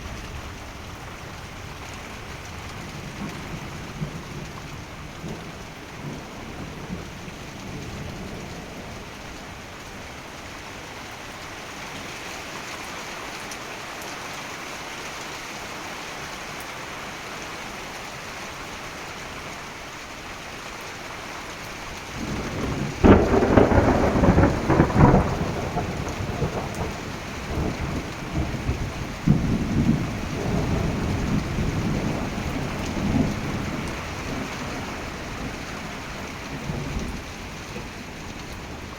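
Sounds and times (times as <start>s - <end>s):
heavy rain pouring: 0.0s - 38.9s
thunder clap rumbling: 22.2s - 38.9s.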